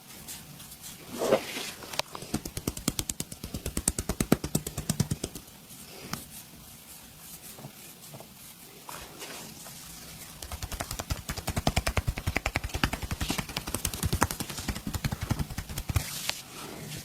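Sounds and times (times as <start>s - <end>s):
hands slapping on bare skin: 2.3s - 5.5s, 10.4s - 16.4s.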